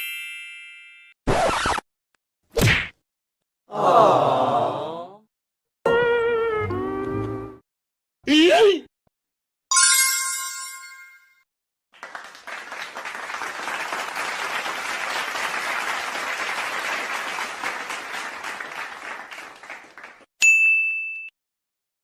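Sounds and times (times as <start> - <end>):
crowd applauding: 12.0 - 20.3
bell-like ding: 20.4 - 21.3
short high ding: 20.4 - 21.3.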